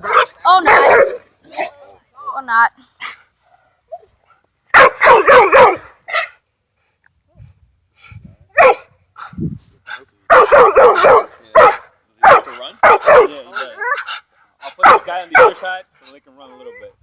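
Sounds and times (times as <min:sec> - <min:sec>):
dog barking: 0:00.0 - 0:01.7, 0:04.7 - 0:06.4, 0:08.5 - 0:09.3, 0:10.3 - 0:15.7.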